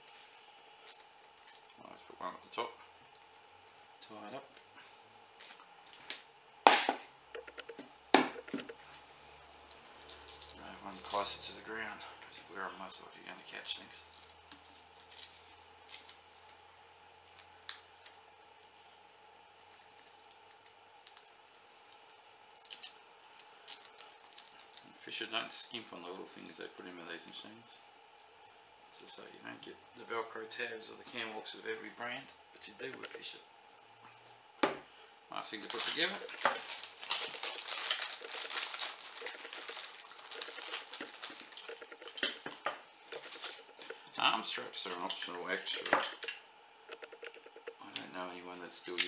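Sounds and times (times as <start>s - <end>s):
faint steady hum: 0.0s - 49.0s
hands rustling metal parts: 35.7s - 44.2s.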